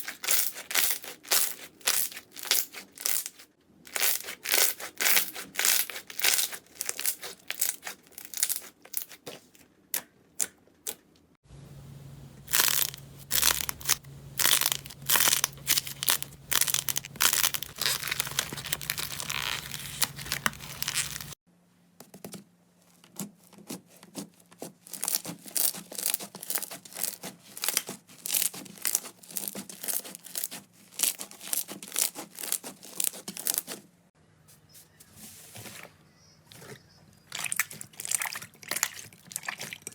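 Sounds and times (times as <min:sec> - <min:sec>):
slime popping and crackling: 0:00.0 - 0:09.2, 0:12.5 - 0:21.4
steady low hum: 0:11.4 - 0:21.4.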